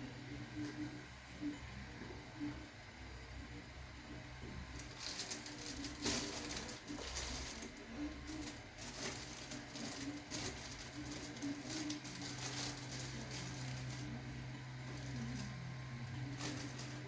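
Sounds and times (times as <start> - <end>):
laser machine humming: 0.0 - 17.0
crackling and rustling: 4.5 - 17.0.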